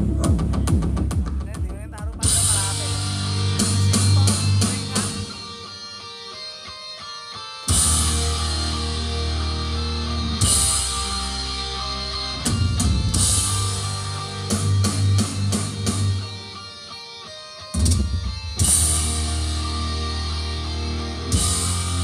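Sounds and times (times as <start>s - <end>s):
instrumental rock music: 0.0s - 22.0s
cymbal crashes: 7.7s - 16.4s.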